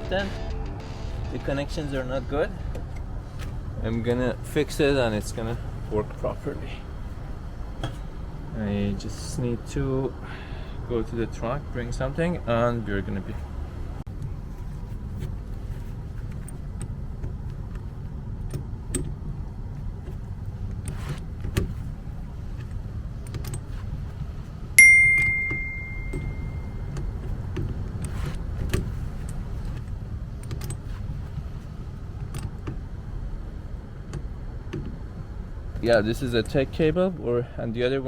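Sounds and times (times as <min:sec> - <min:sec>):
sharp metallic ding: 0:24.8 - 0:26.8.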